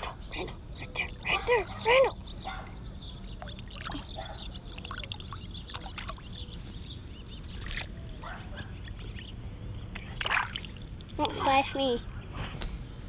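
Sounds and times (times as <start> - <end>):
water sloshing and splashing: 3.2 - 11.7.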